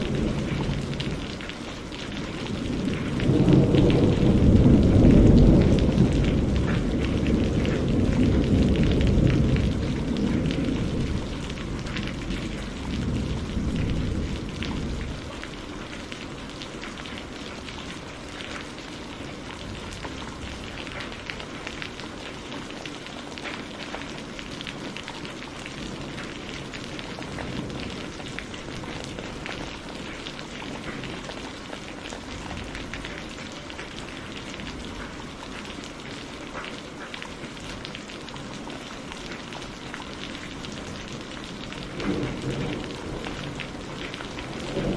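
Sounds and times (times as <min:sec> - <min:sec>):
thunder rumble: 0:00.0 - 0:18.5, 0:24.9 - 0:31.3, 0:40.4 - 0:44.9
rain on hard surfaces: 0:00.0 - 0:44.9.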